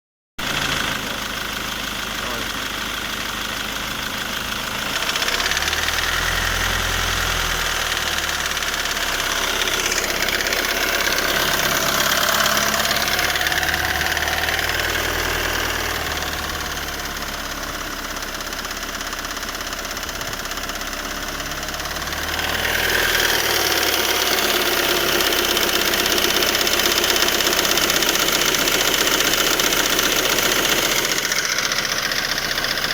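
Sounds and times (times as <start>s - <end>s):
diesel engine running at raised revs: 0.4s - 32.9s.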